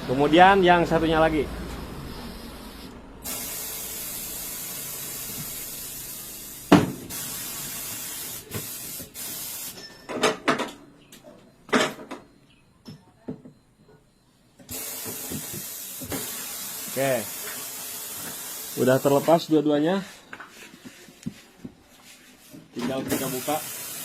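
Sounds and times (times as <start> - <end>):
pneumatic bead breaker hissing: 2.0 - 9.8, 14.7 - 19.2, 23.1 - 24.0.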